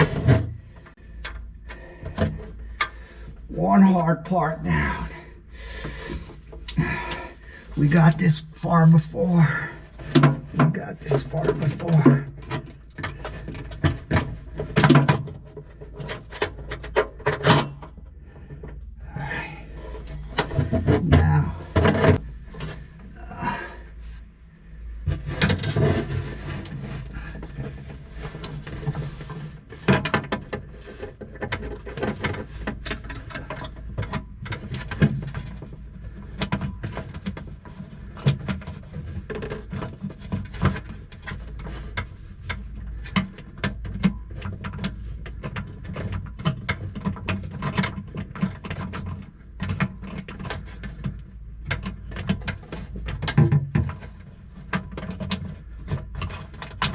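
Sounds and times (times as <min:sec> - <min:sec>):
steady low hum: 0:00.0 - 0:14.8, 0:15.5 - 0:30.0.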